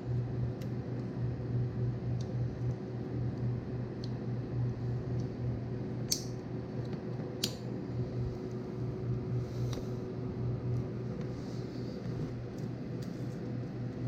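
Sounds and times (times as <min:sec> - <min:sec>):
steady low hum: 0:00.0 - 0:14.0
wires clicking into connector: 0:06.1 - 0:07.7.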